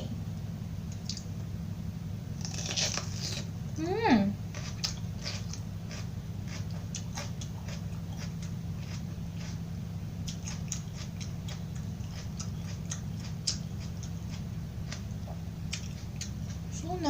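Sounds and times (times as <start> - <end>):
steady low hum: 0.0 - 17.0
crisp chewing crunches: 2.4 - 3.5, 4.4 - 16.8.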